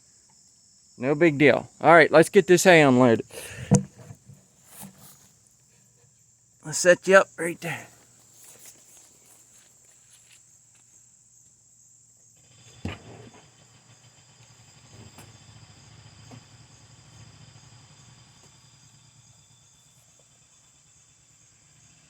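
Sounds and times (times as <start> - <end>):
insects chirring: 0.0 - 22.0
sharp knock: 3.6 - 4.1.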